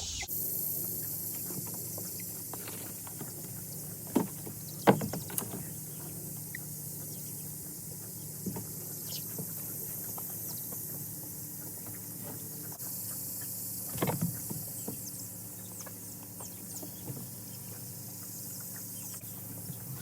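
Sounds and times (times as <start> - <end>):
knocks on netting posts: 2.5 - 6.2, 13.9 - 15.1.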